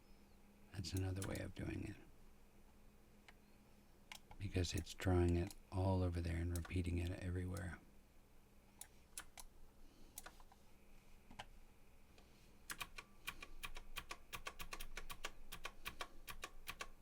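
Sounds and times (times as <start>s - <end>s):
computer keyboard typing: 12.7s - 17.0s.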